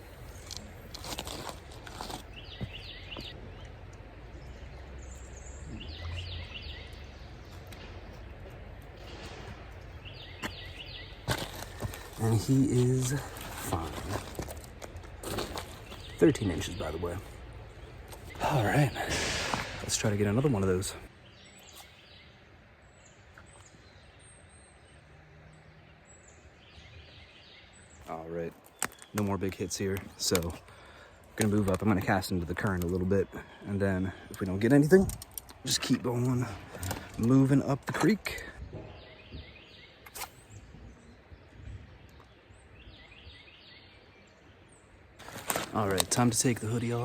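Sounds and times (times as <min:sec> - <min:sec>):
high bird chirps: 0:02.3 - 0:03.7, 0:04.3 - 0:07.6.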